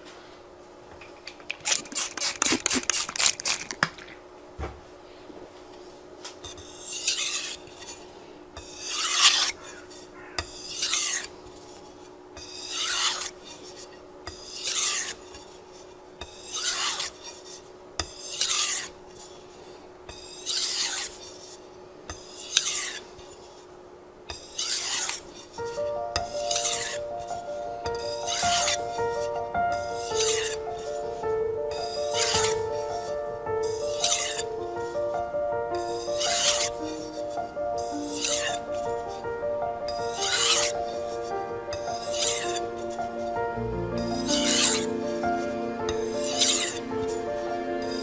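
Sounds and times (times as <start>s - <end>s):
knife scraping on wet whetstone: 1.6s - 3.7s, 6.4s - 8.0s, 8.6s - 15.6s, 16.2s - 21.6s, 22.2s - 23.6s, 24.3s - 25.6s, 26.2s - 27.0s, 27.9s - 28.8s, 29.8s - 30.6s, 31.7s - 32.6s, 33.7s - 34.5s, 35.8s - 37.1s, 37.9s - 38.6s, 40.1s - 41.1s, 41.7s - 43.3s, 44.0s - 48.0s
soft music: 25.6s - 48.0s.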